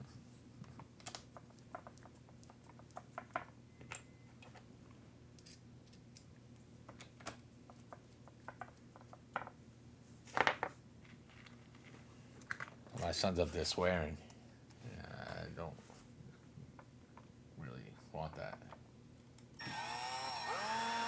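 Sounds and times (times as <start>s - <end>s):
small clicks and taps of tools: 5.4s - 9.1s.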